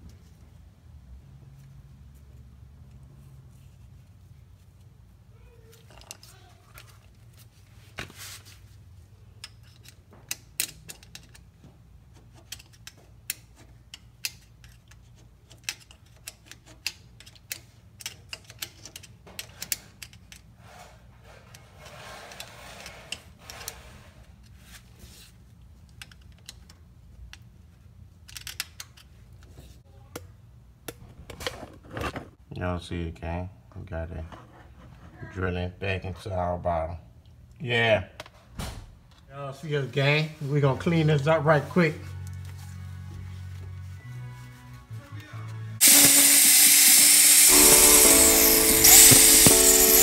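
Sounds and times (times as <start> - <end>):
metallic clicks and taps of tools: 9.4 - 11.5, 12.4 - 20.5, 25.8 - 27.5, 28.2 - 29.1.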